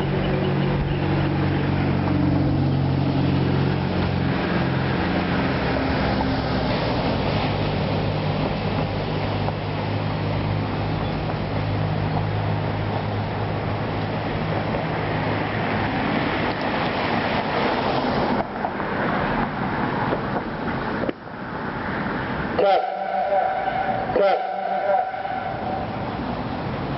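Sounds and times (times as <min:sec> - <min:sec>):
low vehicle hum: 0:00.0 - 0:26.9
road traffic hiss: 0:00.0 - 0:26.9.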